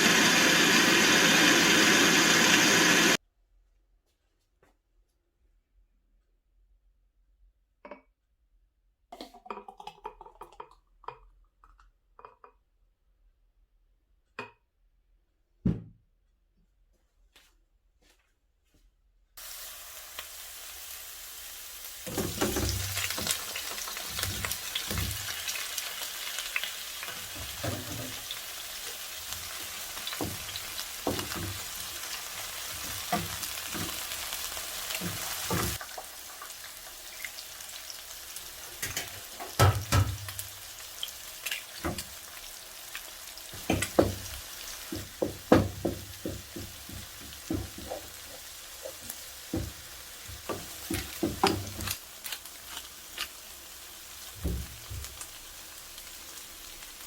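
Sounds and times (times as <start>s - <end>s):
food sizzling in a frying pan: 0.0s - 3.2s, 19.4s - 57.0s.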